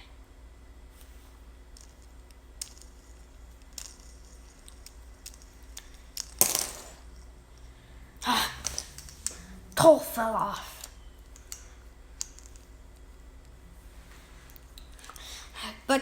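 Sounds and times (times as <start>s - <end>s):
plastic clicks and rattles: 1.8s - 7.2s.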